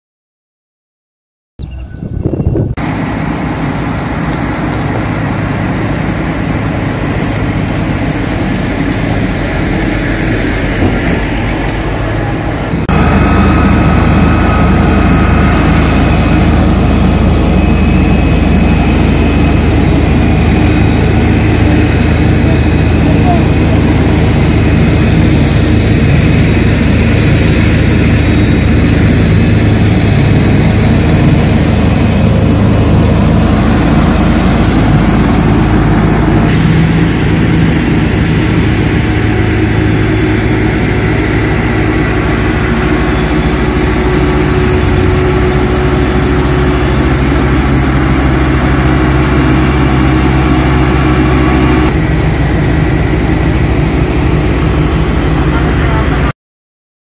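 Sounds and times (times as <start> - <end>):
heavy machinery engines running: 1.8 - 56.3.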